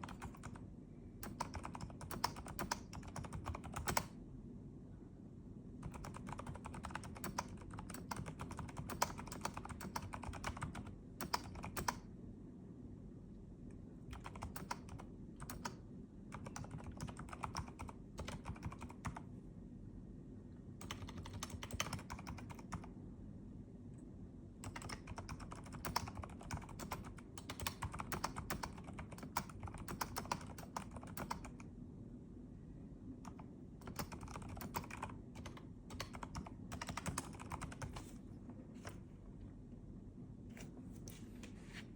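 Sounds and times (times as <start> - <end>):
mechanical keyboard typing: 0.0 - 0.6, 1.2 - 4.2, 5.8 - 12.1, 14.1 - 19.3, 20.8 - 22.9, 24.6 - 31.7, 33.2 - 38.1.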